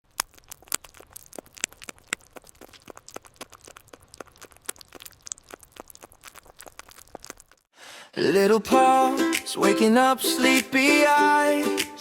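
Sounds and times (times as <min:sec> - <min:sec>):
rodent cracking seed shells: 0:00.0 - 0:07.7.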